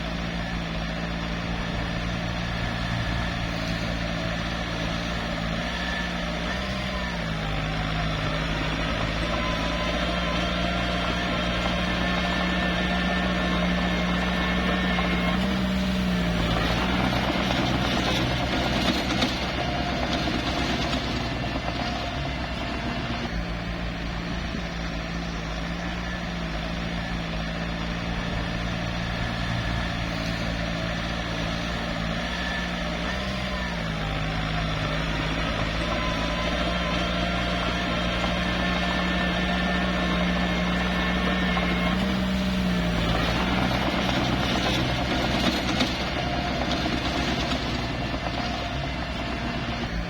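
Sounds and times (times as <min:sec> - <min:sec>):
bulldozer diesel engine running: 0:00.0 - 0:50.0.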